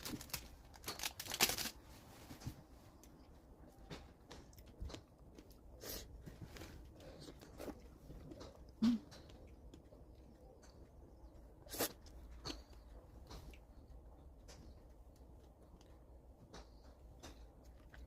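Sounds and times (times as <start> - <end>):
crinkling and crunching handling: 0.0 - 10.6.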